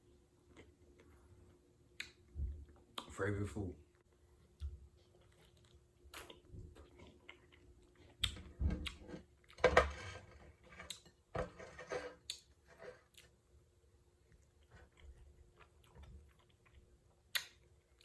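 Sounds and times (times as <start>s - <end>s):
wet chewing of fruit: 4.0s - 9.6s, 14.2s - 18.0s.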